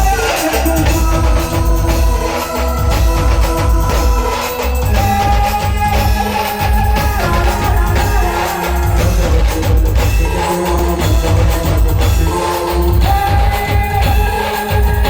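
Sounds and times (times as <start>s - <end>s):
heavy driving drum beat: 0.0s - 15.0s.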